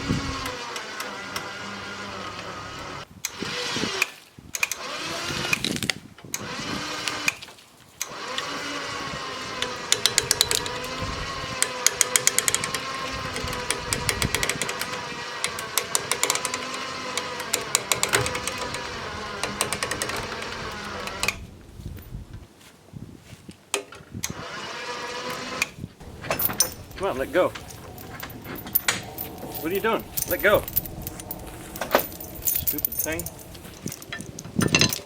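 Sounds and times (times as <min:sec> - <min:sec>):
rapid clattering: 0:26.0 - 0:34.9.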